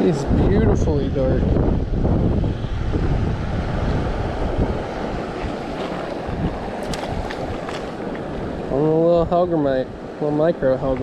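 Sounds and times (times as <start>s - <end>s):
wind buffeting microphone: 0.0s - 11.0s.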